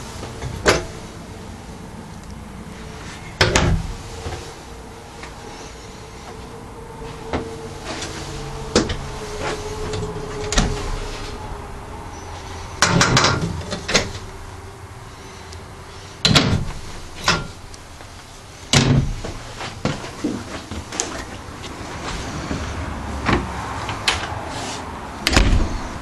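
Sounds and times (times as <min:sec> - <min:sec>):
cupboard doors clunking shut: 0:16.2 - 0:17.5, 0:18.7 - 0:20.9, 0:25.3 - 0:26.0.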